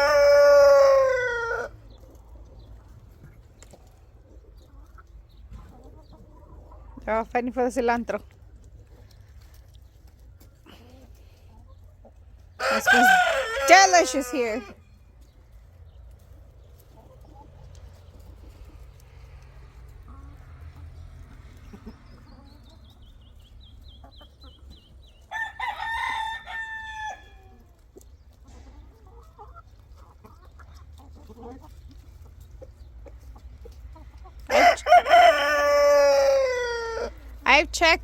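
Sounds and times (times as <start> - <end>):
rooster crowing: 0.0 - 1.7, 12.6 - 14.8, 25.3 - 27.4, 34.5 - 37.2
chickens clucking: 0.0 - 38.0.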